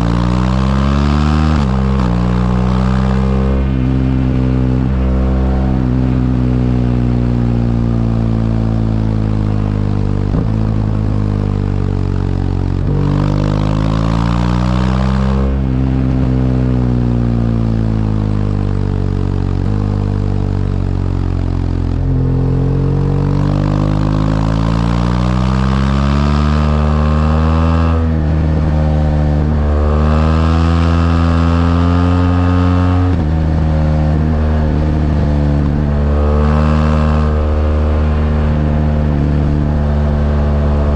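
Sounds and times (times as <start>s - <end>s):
motorcycle engine accelerating: 0.0s - 40.9s.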